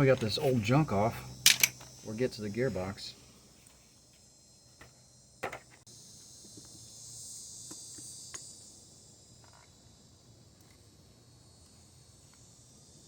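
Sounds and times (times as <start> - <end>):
insects chirring: 0.0 - 13.0.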